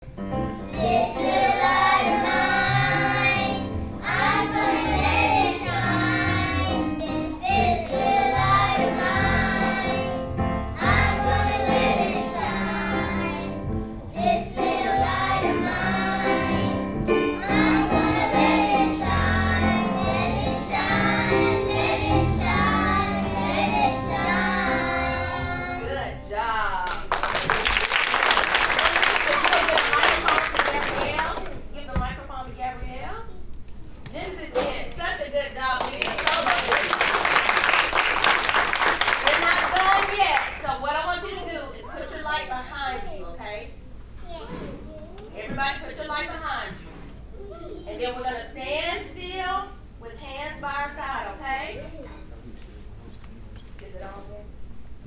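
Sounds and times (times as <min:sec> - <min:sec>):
instrumental accompaniment with bass: 0:00.1 - 0:26.3
group of voices singing: 0:00.7 - 0:26.3.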